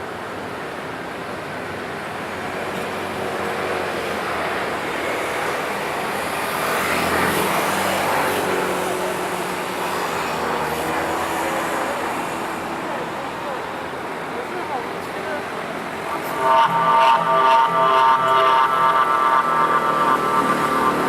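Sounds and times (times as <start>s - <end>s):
large crowd din: 7.4s - 21.0s.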